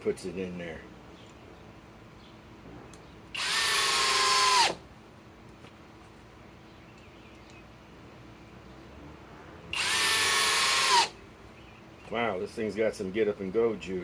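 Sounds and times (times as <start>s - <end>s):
drill motor whining: 3.4s - 4.8s, 9.7s - 11.2s.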